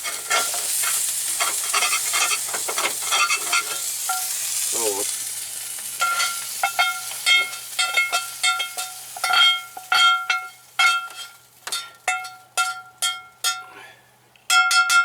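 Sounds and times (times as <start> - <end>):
metal utensil knocking in pan: 6.0 - 13.6, 14.5 - 15.0.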